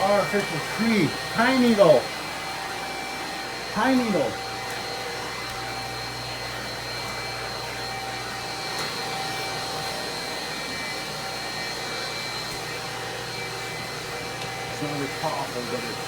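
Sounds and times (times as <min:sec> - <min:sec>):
vacuum cleaner running: 0:00.0 - 0:16.0.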